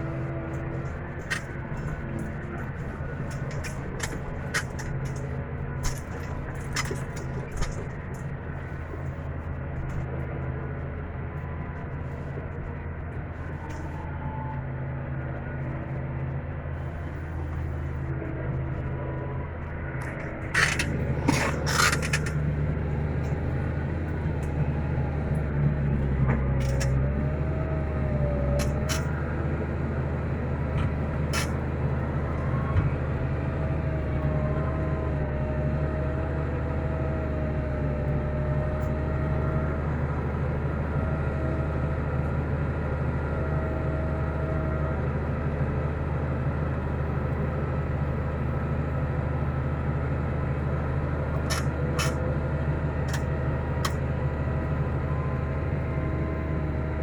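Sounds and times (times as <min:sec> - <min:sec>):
thin wavering whine: 0:00.0 - 0:57.0
tractor diesel engine running: 0:00.0 - 0:57.0
sharp clicks and knocks: 0:00.8 - 0:08.3, 0:20.0 - 0:22.6, 0:26.2 - 0:27.3, 0:28.1 - 0:29.2, 0:30.8 - 0:31.7, 0:51.4 - 0:52.2, 0:53.1 - 0:54.0.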